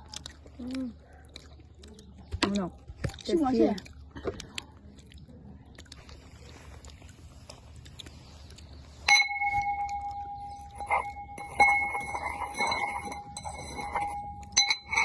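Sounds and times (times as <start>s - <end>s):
light clinks: 9.0s - 15.0s.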